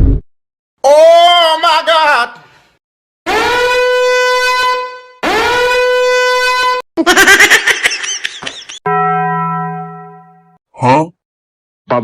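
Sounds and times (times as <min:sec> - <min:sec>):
horn blasts rising in pitch: 0:03.3 - 0:06.8.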